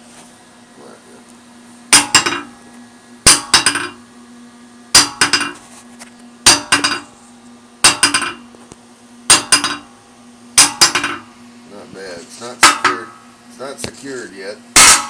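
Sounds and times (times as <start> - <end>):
faint steady hum: 0.0 - 15.0
hammer ringing on anvil: 1.9 - 2.5, 3.3 - 4.0, 5.0 - 5.6, 6.5 - 7.1, 7.8 - 8.4, 9.3 - 9.9, 10.6 - 11.2, 12.6 - 13.2, 14.8 - 15.0.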